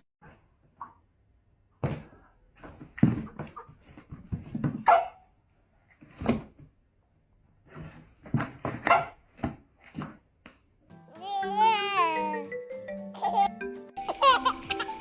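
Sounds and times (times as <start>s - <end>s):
dog barking: 4.8s - 5.2s, 8.8s - 9.2s.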